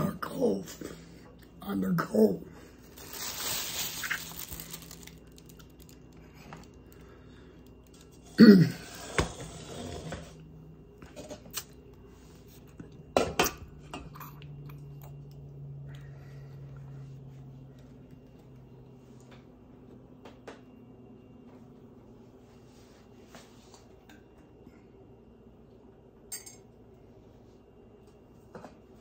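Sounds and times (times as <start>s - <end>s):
steady low hum: 0.0s - 29.0s
dishes and utensils clattering: 26.3s - 26.7s.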